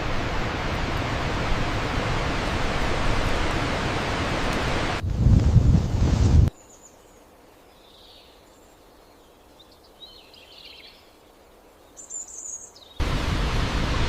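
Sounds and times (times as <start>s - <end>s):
waterfall rushing: 0.0s - 5.0s, 13.0s - 14.0s
faint birds chirping: 6.5s - 13.0s.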